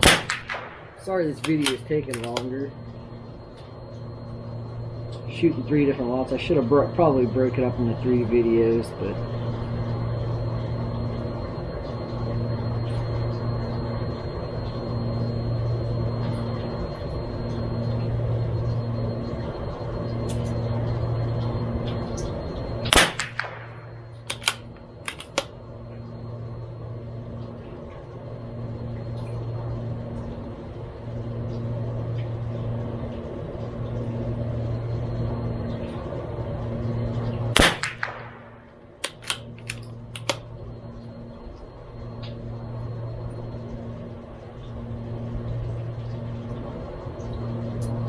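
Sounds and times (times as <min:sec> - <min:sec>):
rifle shot: 0:00.0 - 0:02.4, 0:22.9 - 0:25.4, 0:37.6 - 0:39.4
low hum: 0:00.0 - 0:48.0
rifle bolt clicks: 0:01.4 - 0:02.4, 0:24.3 - 0:25.5, 0:39.0 - 0:40.4.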